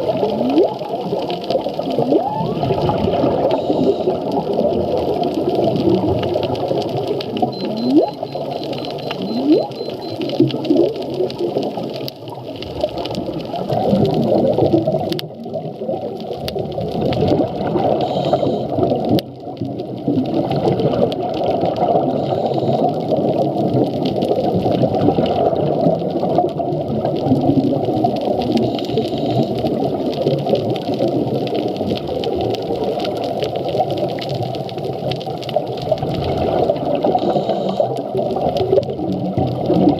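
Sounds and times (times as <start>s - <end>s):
underwater rushing noise: 0.0s - 39.9s
whale song calls: 2.0s - 4.2s, 7.4s - 10.3s, 37.1s - 38.0s.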